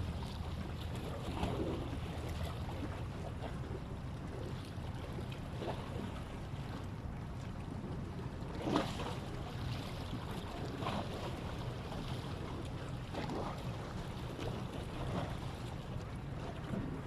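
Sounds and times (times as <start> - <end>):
water noise: 0.0 - 17.0
wind: 0.0 - 17.0.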